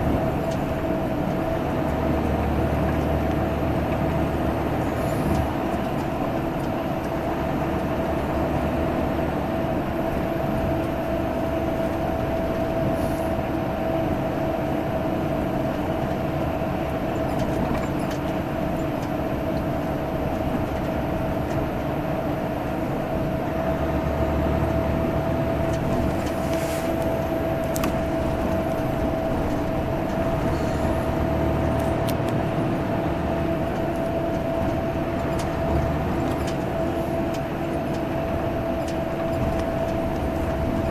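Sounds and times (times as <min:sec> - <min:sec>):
bus diesel engine rumble: 0:00.0 - 0:40.9
steady whine: 0:18.6 - 0:40.9.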